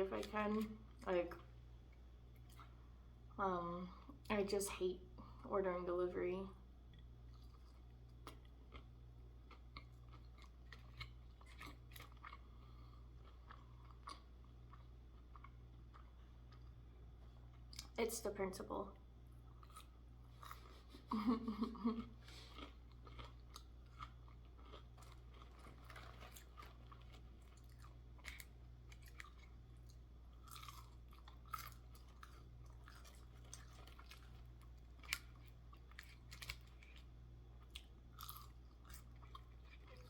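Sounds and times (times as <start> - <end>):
steady low hum: 0.0 - 40.0
person chewing crunchy food: 7.0 - 16.8, 19.4 - 21.1, 21.8 - 40.0.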